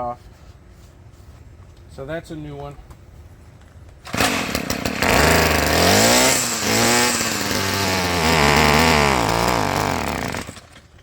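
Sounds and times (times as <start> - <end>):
string trimmer engine running: 4.1 - 10.9
pull-start cord rattle: 4.1 - 11.0.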